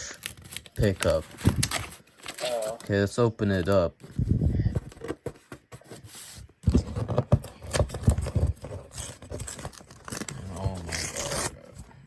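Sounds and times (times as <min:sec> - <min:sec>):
paper envelope rustling and tearing: 0:00.0 - 0:02.9, 0:06.1 - 0:11.9.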